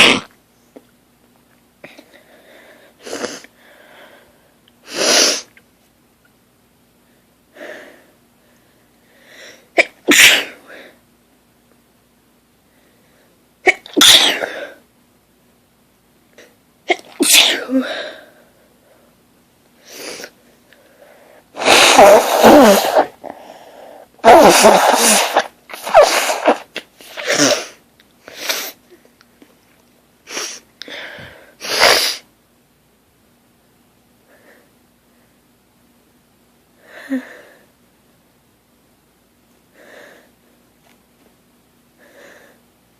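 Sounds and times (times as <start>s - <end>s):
woman sneezing: 9.8s - 10.6s, 13.7s - 14.7s, 16.9s - 18.0s, 21.6s - 23.2s, 24.2s - 27.8s, 31.6s - 32.2s.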